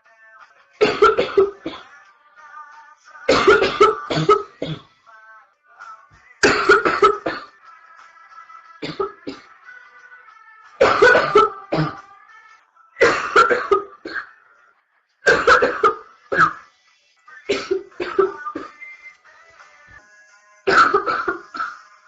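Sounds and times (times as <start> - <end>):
woman coughing: 0.8 - 1.8, 3.3 - 4.9, 6.4 - 7.5, 10.8 - 12.0, 13.0 - 14.3, 15.3 - 16.6, 17.5 - 18.7, 20.7 - 21.8.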